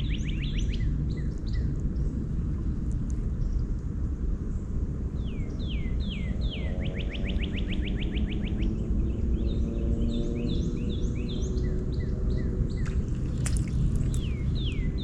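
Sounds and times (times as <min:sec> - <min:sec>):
songbird singing: 0:00.0 - 0:03.8, 0:05.1 - 0:15.0
steady low rumble: 0:00.0 - 0:06.7, 0:10.8 - 0:15.0.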